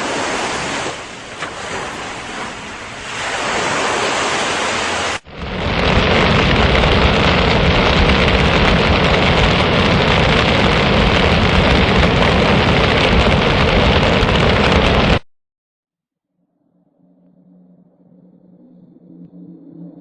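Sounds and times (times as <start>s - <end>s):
heavy rain falling: 0.0s - 15.2s.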